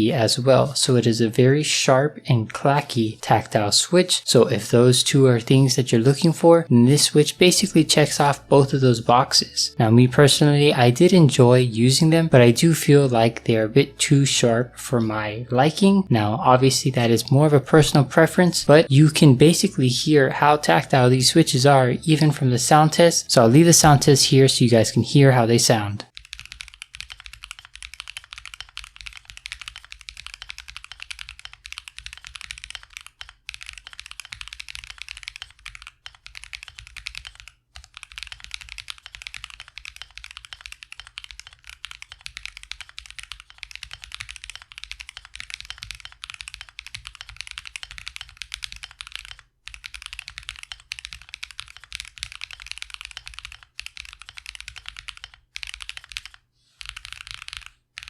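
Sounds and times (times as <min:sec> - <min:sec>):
mechanical keyboard typing: 0:26.1 - 0:58.0.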